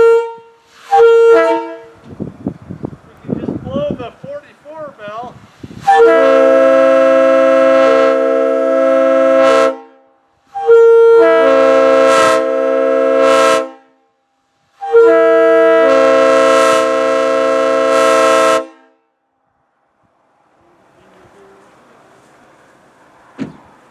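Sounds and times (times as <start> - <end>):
locomotive air horn blasts: 0.0 - 2.0, 5.7 - 19.2.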